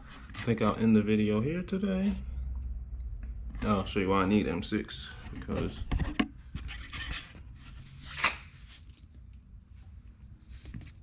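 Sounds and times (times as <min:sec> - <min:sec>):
hardware rustling and scraping: 0:05.0 - 0:11.0.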